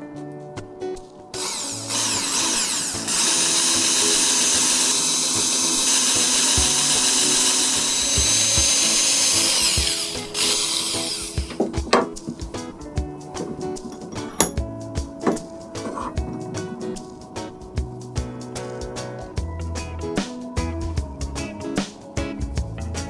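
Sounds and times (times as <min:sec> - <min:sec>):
background music: 0:00.0 - 0:23.0
power tool motor whining: 0:01.4 - 0:11.7.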